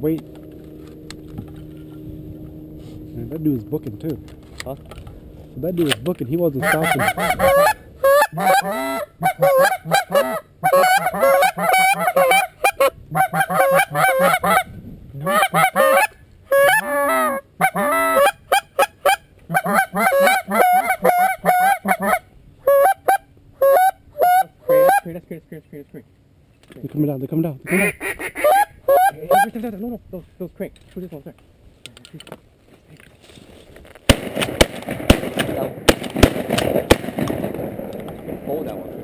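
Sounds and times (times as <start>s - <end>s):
geese honking: 6.5s - 25.2s, 27.7s - 29.6s.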